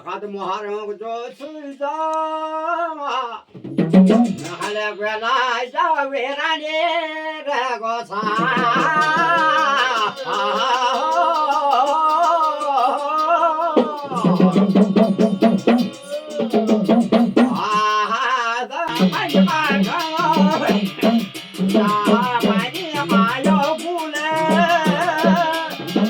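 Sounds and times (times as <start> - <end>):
hourglass drum beat: 3.6 - 5.2, 8.2 - 18.1, 18.9 - 26.0
person singing long note: 12.5 - 18.0.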